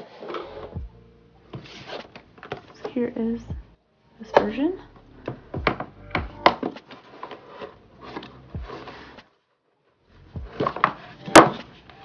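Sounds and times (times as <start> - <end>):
cardboard and paper rustling: 1.6 - 2.9, 6.5 - 9.4.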